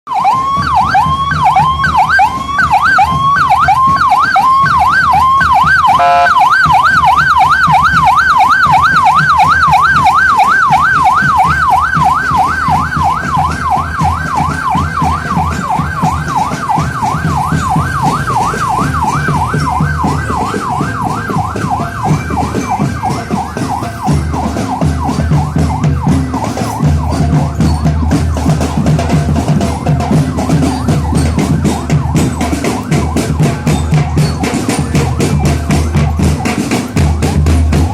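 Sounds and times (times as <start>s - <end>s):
electronic siren wailing: 0.1s - 37.9s
bass-heavy music: 12.9s - 37.9s.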